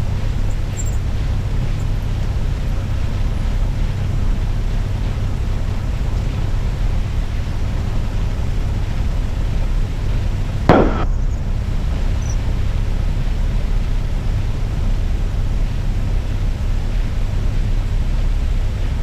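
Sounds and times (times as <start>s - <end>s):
aircraft piston engine idling: 0.0s - 19.0s.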